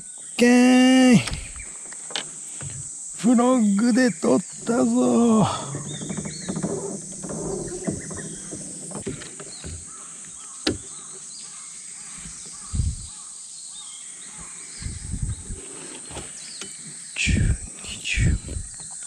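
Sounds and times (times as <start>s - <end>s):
faint chirps: 0.0s - 8.6s, 9.2s - 19.0s
high insect-like hiss: 0.0s - 19.0s
low thuds of handling on boat: 1.1s - 13.3s, 14.3s - 17.6s, 18.2s - 19.0s.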